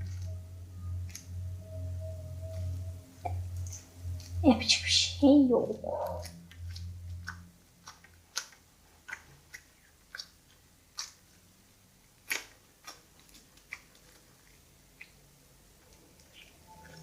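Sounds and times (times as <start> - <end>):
slime clicking and popping: 6.2 - 11.4, 12.1 - 15.2.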